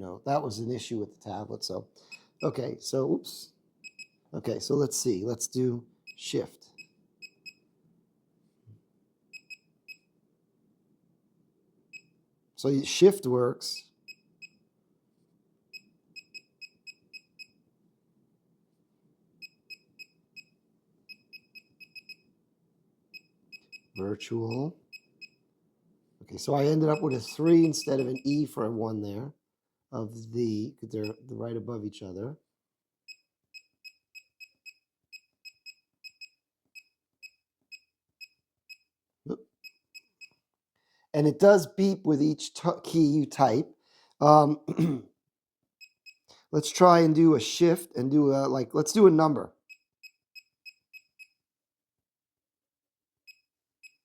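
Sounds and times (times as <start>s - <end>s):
high electronic keyboard beeps: 26.9s - 28.5s.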